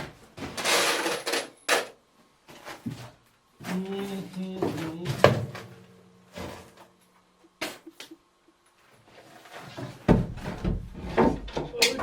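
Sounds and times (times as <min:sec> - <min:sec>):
wood and tools knocking: 0:09.7 - 0:12.0.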